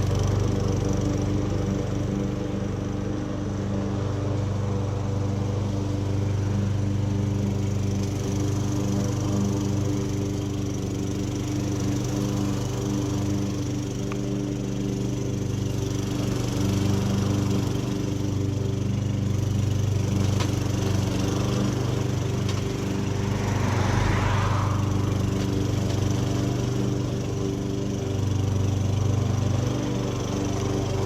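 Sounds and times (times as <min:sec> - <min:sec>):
lawn mower engine running: 0:00.0 - 0:31.0
short rushing noise: 0:23.1 - 0:25.4.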